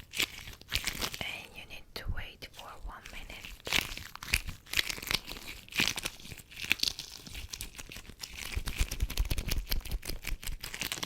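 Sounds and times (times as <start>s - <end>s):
latex gloves rubbing and crinkling: 0.0s - 1.5s, 2.5s - 11.0s.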